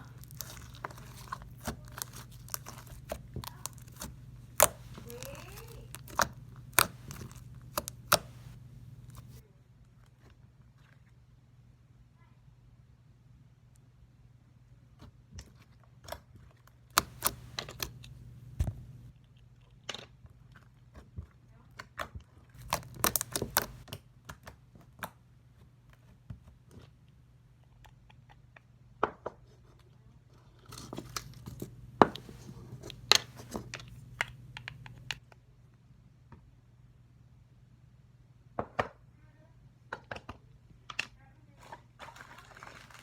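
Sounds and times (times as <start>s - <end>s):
steady low hum: 0.0s - 9.4s, 17.0s - 19.1s.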